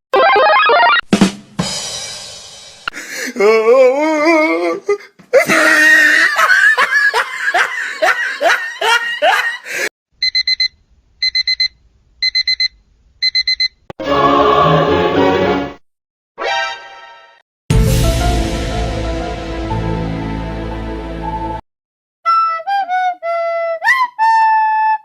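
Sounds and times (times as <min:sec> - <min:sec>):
digital alarm clock beeping: 0:10.2 - 0:13.8
short music clip: 0:14.0 - 0:15.8, 0:17.7 - 0:21.6.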